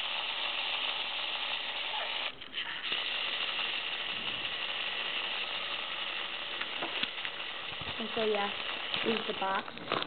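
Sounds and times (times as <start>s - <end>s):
clockwork toy gears whirring: 0.0s - 10.0s.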